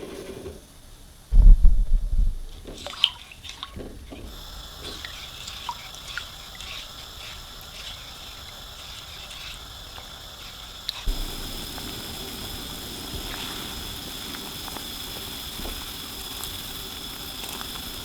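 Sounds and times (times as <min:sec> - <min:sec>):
loud low knock: 0:01.3 - 0:02.6
liquid dripping and trickling: 0:02.7 - 0:18.0.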